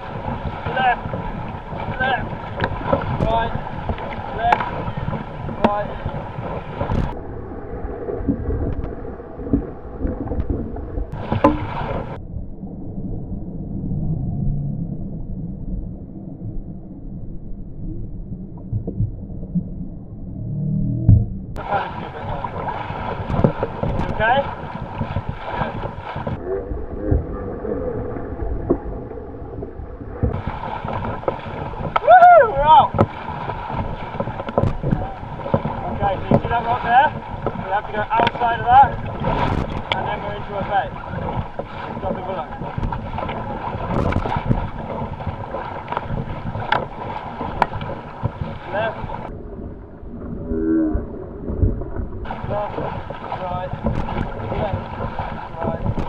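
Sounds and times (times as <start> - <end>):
paddles stroking water: 0.0 - 12.2, 21.6 - 56.0
water sloshing: 0.0 - 12.2, 20.9 - 56.0
low rumble of swell: 0.0 - 23.8, 24.4 - 34.1, 48.7 - 54.5
sharp knocks: 11.1 - 12.1.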